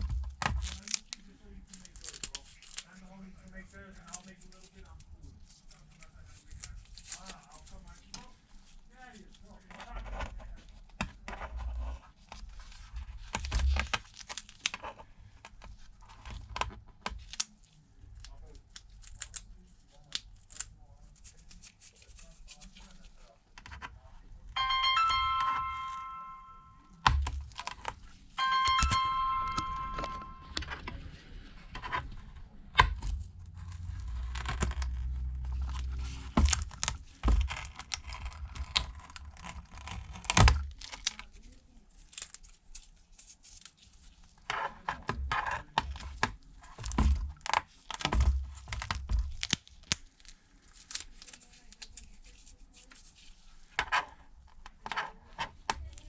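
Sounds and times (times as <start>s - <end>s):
ringing tones: 24.6s - 27.0s, 28.4s - 30.8s.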